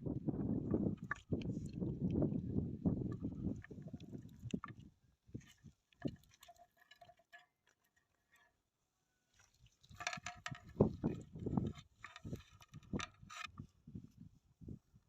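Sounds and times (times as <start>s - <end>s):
knocking and clatter: 10.0s - 11.1s.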